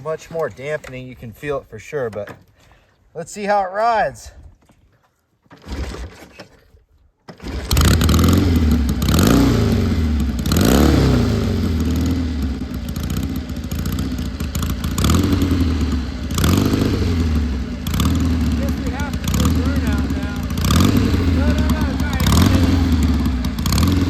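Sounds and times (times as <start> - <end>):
motorcycle engine revving: 7.4 - 24.0.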